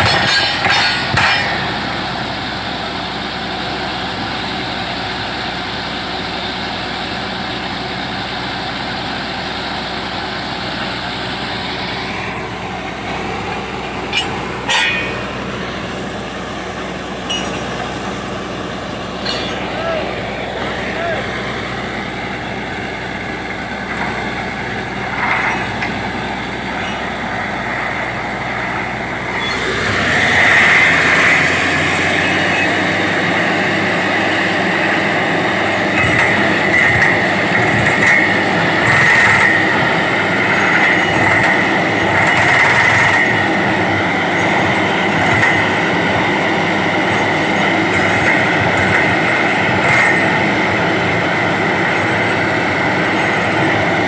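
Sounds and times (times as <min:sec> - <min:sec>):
drilling rig running: 0:00.0 - 0:54.0
high metallic squeal: 0:14.0 - 0:15.9, 0:17.2 - 0:17.8, 0:19.0 - 0:20.3, 0:29.2 - 0:33.0.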